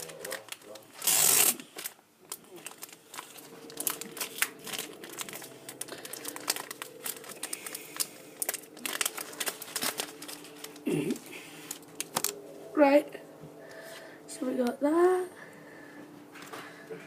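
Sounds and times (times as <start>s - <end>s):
foil wrapper crinkling and tearing: 0.0s - 12.5s.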